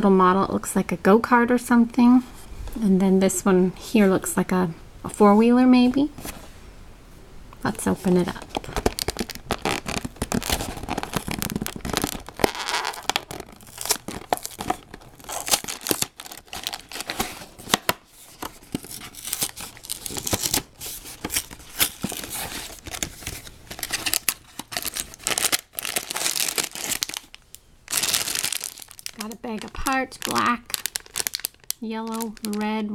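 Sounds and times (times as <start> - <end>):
packaging crackling and rustling: 7.8 - 32.9.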